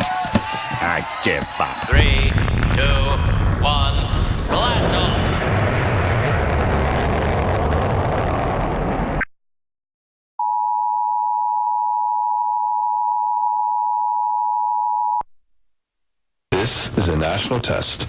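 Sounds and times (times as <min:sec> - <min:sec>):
cartoon rocket blast-off rumble: 0:01.9 - 0:09.2.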